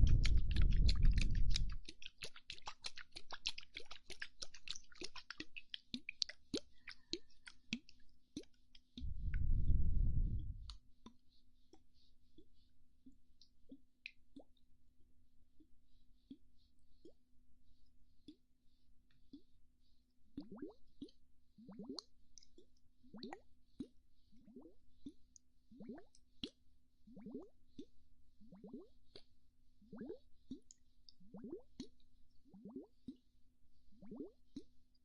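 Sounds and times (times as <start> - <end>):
breath blown on microphone: 0.0 - 1.8, 9.0 - 10.7
wet mouth clicks and pops: 0.0 - 9.6, 10.2 - 12.6, 19.3 - 19.6, 20.4 - 23.9, 27.2 - 28.0, 30.0 - 32.0, 32.6 - 33.2, 34.1 - 34.7.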